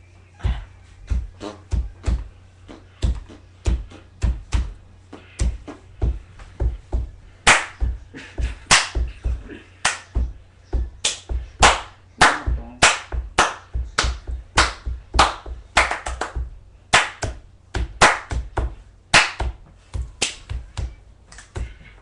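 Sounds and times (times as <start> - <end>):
hip hop dance beat: 0.4 - 22.0
sharp clap: 7.4 - 7.9, 8.6 - 9.2, 9.8 - 10.2, 11.0 - 19.6, 20.2 - 21.7.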